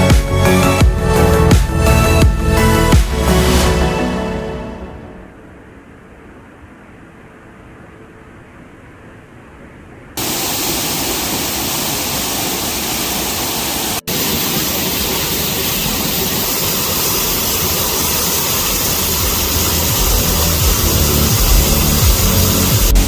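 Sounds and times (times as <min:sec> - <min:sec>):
waterfall rushing: 0:10.2 - 0:23.0.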